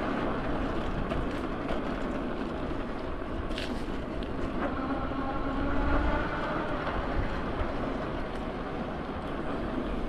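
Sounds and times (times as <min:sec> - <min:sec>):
low rumble of traffic: 0:00.0 - 0:10.0.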